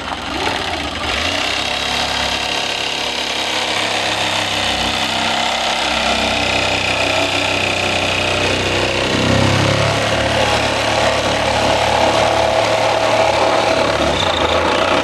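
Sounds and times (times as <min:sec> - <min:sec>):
power tool cutting fiberglass: 0:00.0 - 0:15.0.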